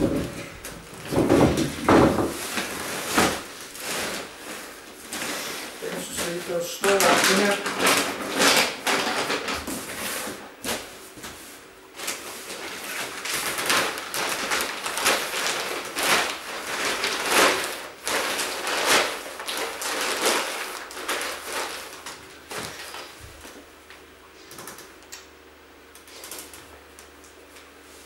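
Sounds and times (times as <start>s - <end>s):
items rustling and crinkling: 0.0s - 24.0s.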